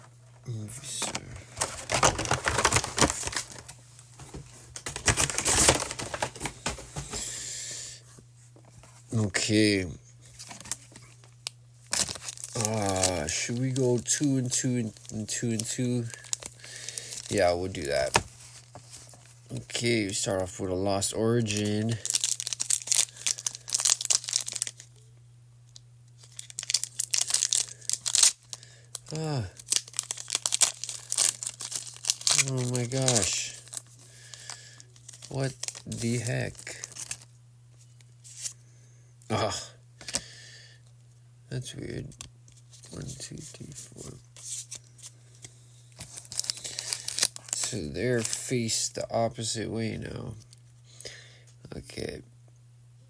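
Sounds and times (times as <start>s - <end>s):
foil packs crinkling: 0.8s - 7.5s, 10.3s - 20.3s, 21.0s - 25.0s, 26.2s - 37.3s, 42.6s - 48.9s.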